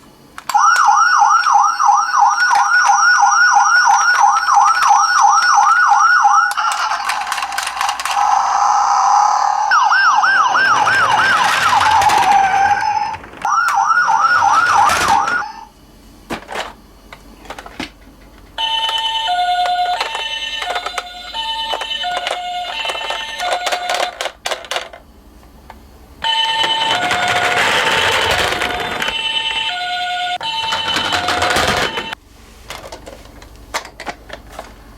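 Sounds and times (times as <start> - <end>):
two-note ambulance siren: 0.5 - 7.3, 8.0 - 15.7, 18.6 - 24.1, 26.2 - 32.2
toy police siren yelp: 0.5 - 15.7, 18.6 - 24.2.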